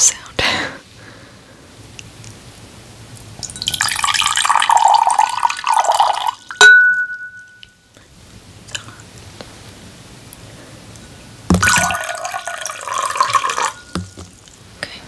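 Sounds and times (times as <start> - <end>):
water pouring into glass: 3.4 - 7.5, 11.5 - 14.4
sharp glass clink: 6.4 - 7.8, 13.5 - 14.1.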